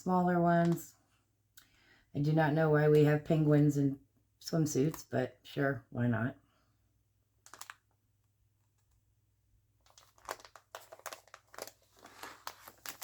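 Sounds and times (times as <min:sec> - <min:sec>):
plastic sleeves crinkling: 0:07.4 - 0:09.0, 0:09.8 - 0:13.0.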